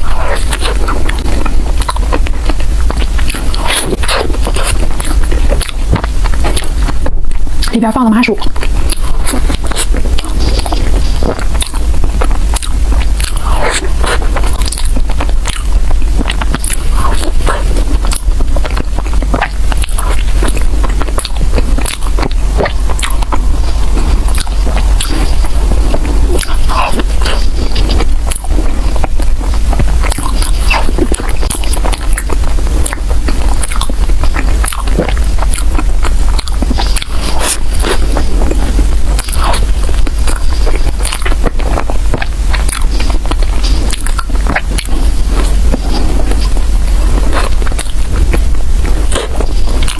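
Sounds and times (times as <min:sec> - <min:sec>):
chewing soft bread: 0:00.0 - 0:49.9
low hum: 0:00.0 - 0:49.9
wet mouth clicks: 0:08.4 - 0:46.6.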